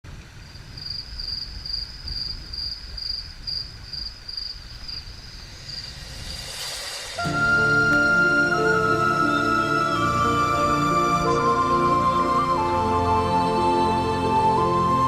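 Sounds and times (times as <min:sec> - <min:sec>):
insect chirping: 0:00.3 - 0:08.4
low rumble: 0:04.7 - 0:09.4.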